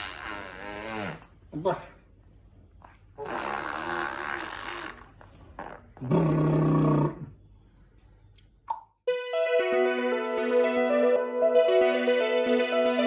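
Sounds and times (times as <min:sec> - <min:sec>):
person growling: 0:06.0 - 0:07.3.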